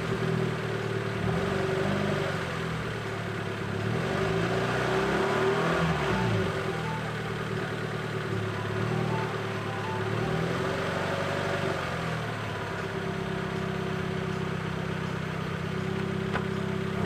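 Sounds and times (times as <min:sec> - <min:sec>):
car engine running: 0:00.0 - 0:17.0
faint rising and falling tone: 0:05.2 - 0:14.0.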